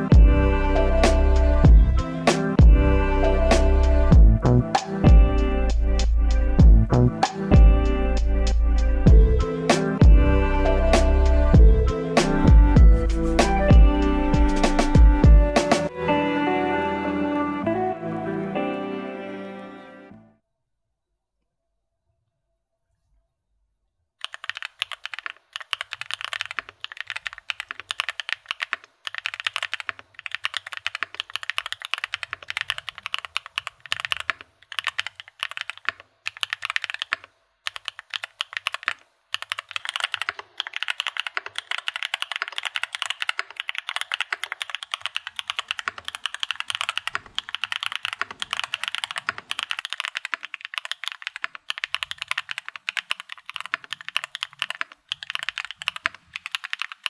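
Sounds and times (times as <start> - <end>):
mechanical keyboard typing: 24.2 - 57.0.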